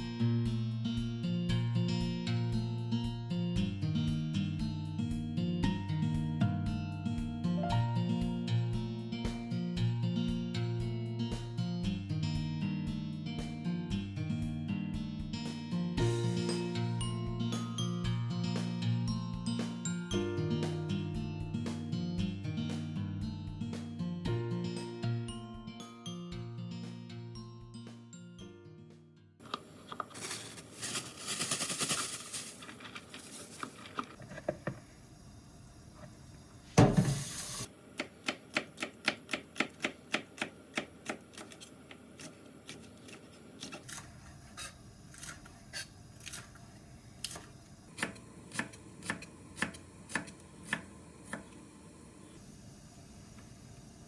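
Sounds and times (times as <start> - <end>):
knife chopping on cutting board: 38.0 - 41.6, 48.0 - 51.5.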